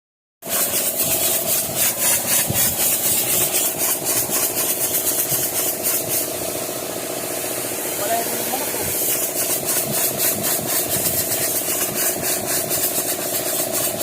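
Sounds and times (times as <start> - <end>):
high pulsing hiss: 0.5 - 14.0
diesel bus engine idling: 6.2 - 9.2.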